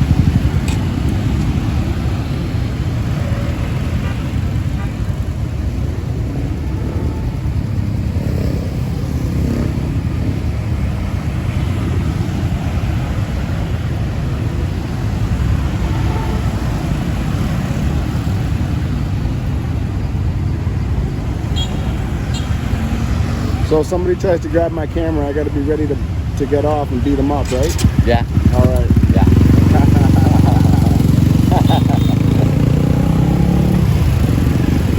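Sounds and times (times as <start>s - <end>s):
wind rumble on microphone: 0.0s - 3.0s, 33.8s - 34.9s
motorcycle engine: 0.0s - 19.8s, 21.0s - 23.7s, 26.0s - 34.9s
surrounding traffic: 0.0s - 34.9s.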